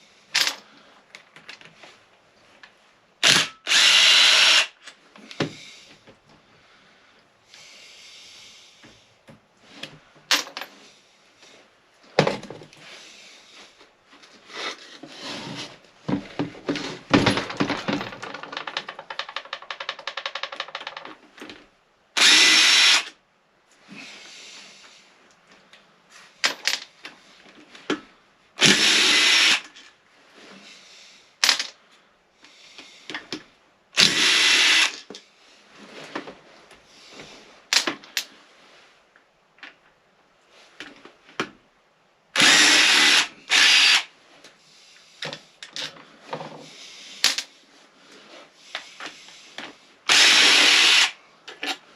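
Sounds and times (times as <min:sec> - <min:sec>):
power tool running: 0:03.2 - 0:04.8, 0:22.2 - 0:23.1, 0:28.6 - 0:29.6, 0:34.0 - 0:35.0, 0:42.4 - 0:44.1, 0:50.1 - 0:51.2.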